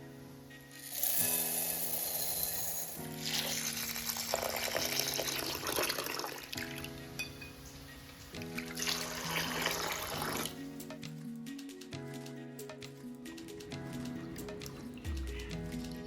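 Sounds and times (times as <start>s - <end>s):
background music: 0.0s - 16.0s
water running: 0.8s - 10.8s.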